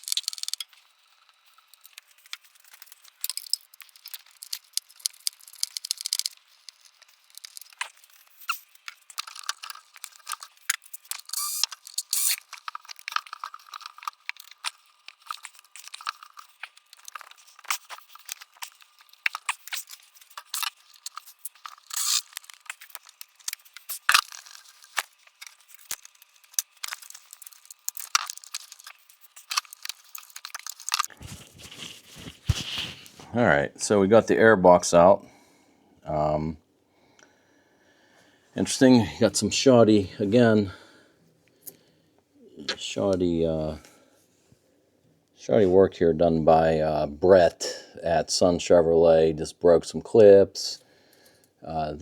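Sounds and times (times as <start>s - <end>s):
clicks and scrapes: 0.0s - 33.3s
plastic crinkling: 0.0s - 33.3s.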